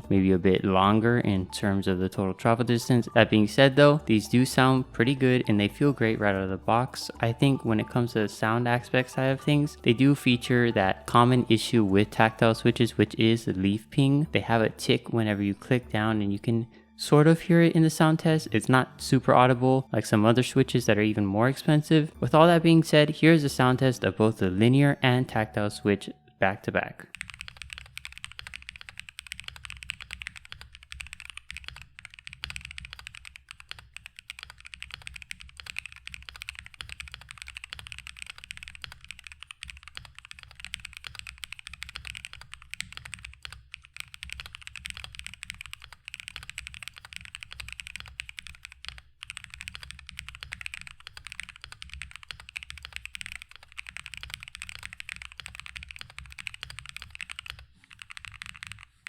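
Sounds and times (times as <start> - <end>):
fast typing on mechanical keyboard: 27.1 - 59.0.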